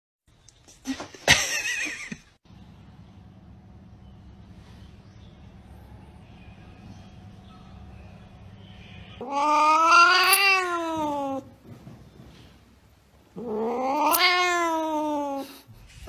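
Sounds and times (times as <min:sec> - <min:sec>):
cat yowling: 0:09.2 - 0:11.5, 0:13.4 - 0:15.7.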